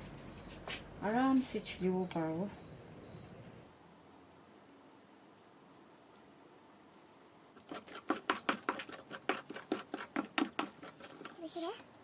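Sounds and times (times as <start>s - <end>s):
utensil knocking in a bowl: 7.6s - 11.4s.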